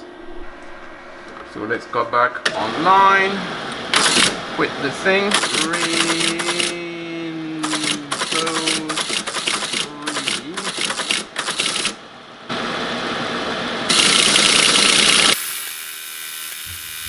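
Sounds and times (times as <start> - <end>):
mechanical running noise: 2.5 - 7.0, 13.9 - 17.0
teletype clattering: 5.3 - 6.8, 7.6 - 12.0.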